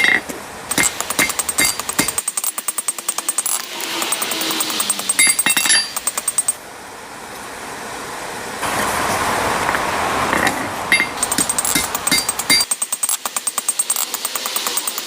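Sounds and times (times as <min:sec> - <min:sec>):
hammer ringing on steel anvil: 0:00.0 - 0:06.6, 0:10.9 - 0:12.7.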